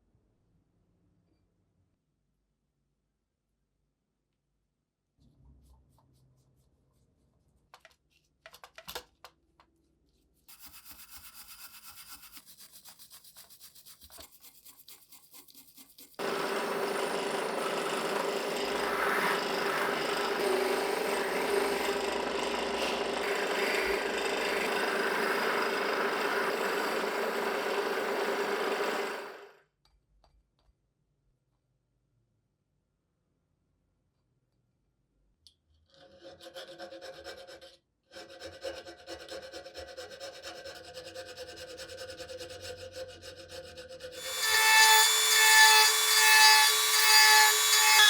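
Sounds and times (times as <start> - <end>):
power tool abrading metal: 16.2 - 29.5, 44.2 - 48.0.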